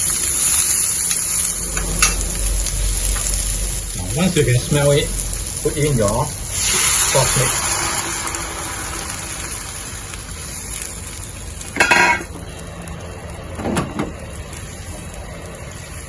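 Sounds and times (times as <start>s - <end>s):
sauce hissing in frying pan: 0.0s - 16.0s
utensil clattering against pan: 11.8s - 12.3s.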